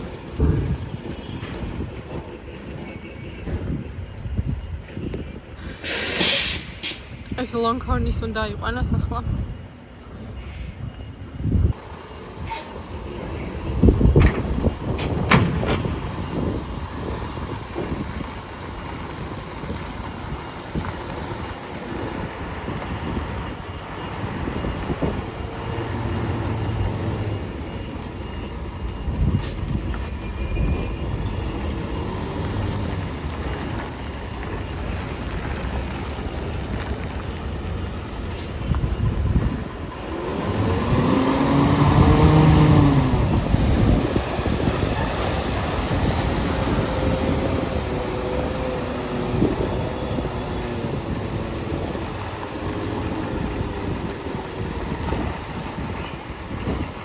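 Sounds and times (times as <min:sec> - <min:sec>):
diesel truck engine running: 0:11.8 - 0:57.0.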